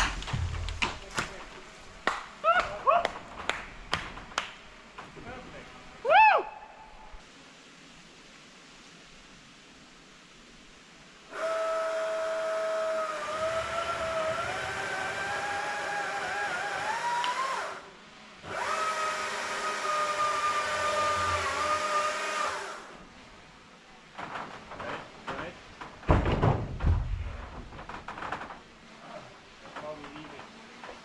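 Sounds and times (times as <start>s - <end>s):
chainsaw cutting wood: 0.0s - 1.7s, 11.3s - 23.0s.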